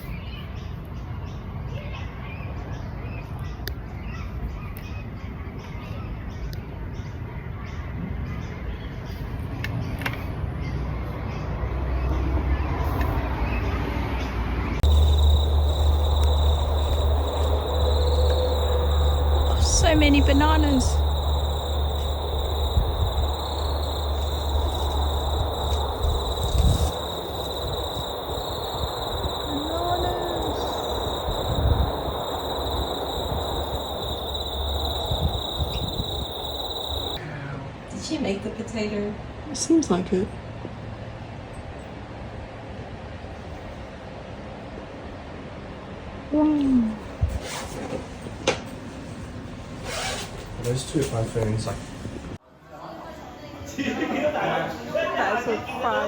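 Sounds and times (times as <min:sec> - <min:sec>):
insects trilling: 0:14.8 - 0:37.2
steady low rumble: 0:14.8 - 0:37.2.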